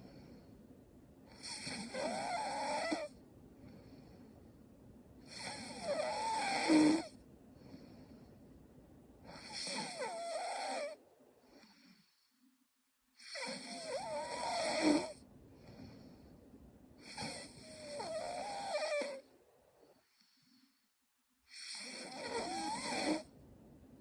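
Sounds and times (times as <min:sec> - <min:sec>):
soft breaths: 0:00.0 - 0:24.0
woman snoring: 0:01.3 - 0:03.1, 0:05.3 - 0:07.1, 0:09.2 - 0:12.2, 0:13.2 - 0:16.2, 0:17.0 - 0:19.3, 0:21.5 - 0:23.3.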